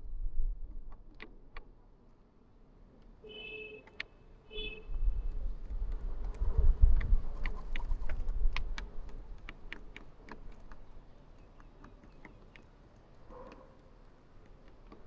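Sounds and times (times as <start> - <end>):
sharp irregular clicks: 7.0 - 15.0.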